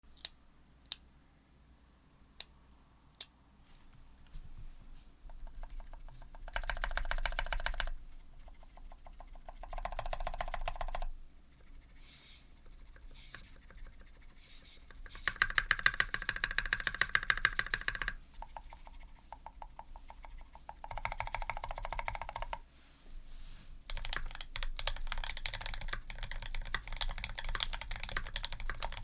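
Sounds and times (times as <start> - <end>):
typing on mechanical keyboard: 5.4 - 11.1, 14.9 - 22.6, 23.9 - 29.0.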